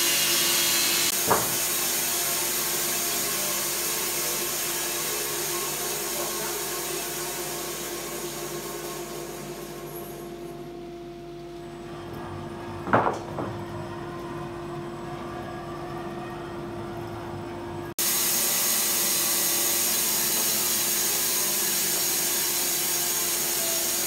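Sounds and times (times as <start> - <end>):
bandsaw mill humming: 0.0 - 24.0.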